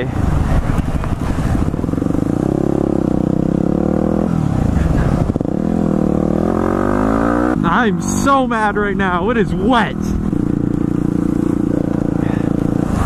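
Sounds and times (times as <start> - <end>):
motorcycle engine running under load: 0.3 - 6.6, 10.0 - 13.0.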